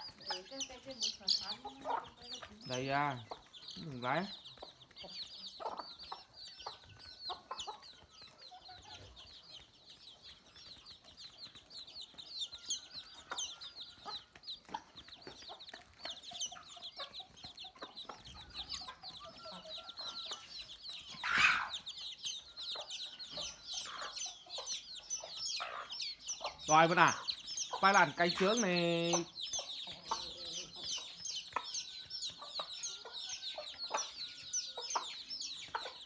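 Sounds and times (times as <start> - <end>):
chickens clucking: 0.0 - 36.0
chicks peeping: 0.0 - 36.0
loud chicken call: 21.2 - 21.8.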